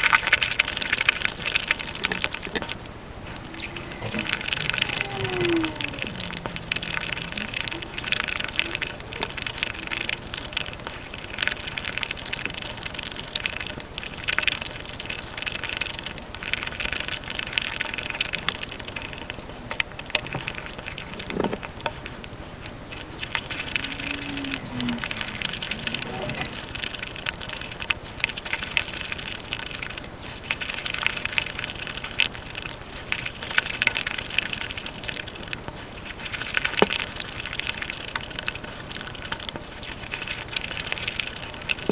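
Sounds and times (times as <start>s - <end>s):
wet chewing and smacking: 0.0s - 41.9s
squeaky pitched sounds: 1.8s - 10.8s, 22.6s - 27.2s.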